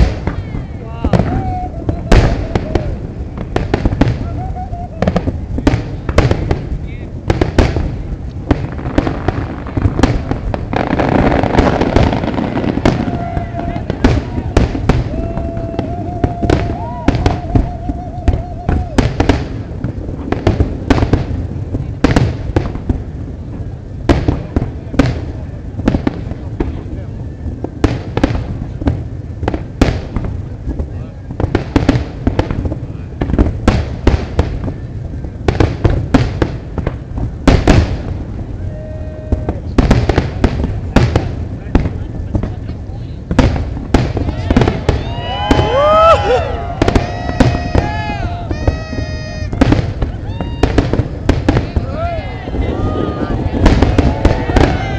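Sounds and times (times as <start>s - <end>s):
fireworks bangs: 0.0s - 54.9s
voices: 8.2s - 20.4s, 38.2s - 54.9s.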